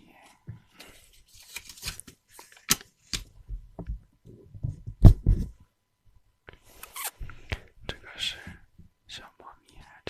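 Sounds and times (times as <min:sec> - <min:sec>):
paper rustling and crinkling: 0:00.8 - 0:03.2
sharp paper crackle: 0:01.2 - 0:02.8.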